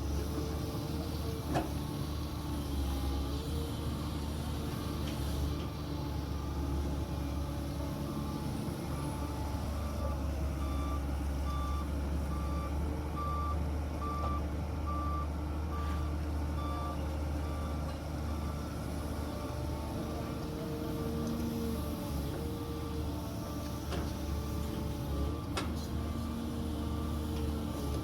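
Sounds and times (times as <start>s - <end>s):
reversing alarm beeping: 10.6s - 16.0s.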